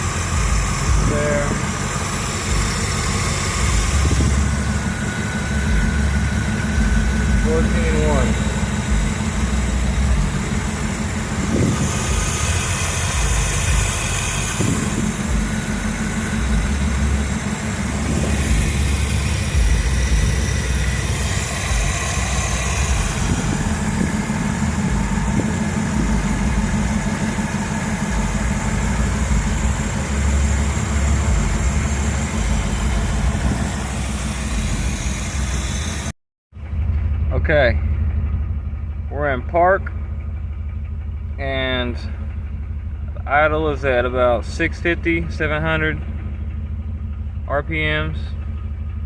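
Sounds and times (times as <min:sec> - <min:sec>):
car engine idling: 0:00.0 - 0:49.0.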